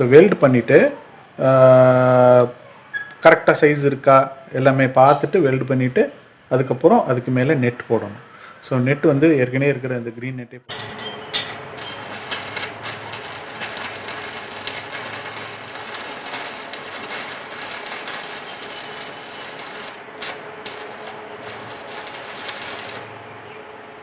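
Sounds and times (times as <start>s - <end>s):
welding arc crackling: 10.7s - 23.8s
low hum: 12.1s - 24.0s.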